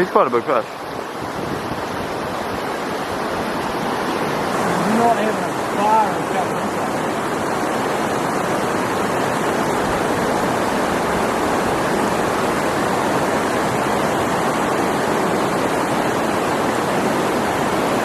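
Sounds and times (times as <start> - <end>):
fast-flowing river rushing: 0.0 - 18.0.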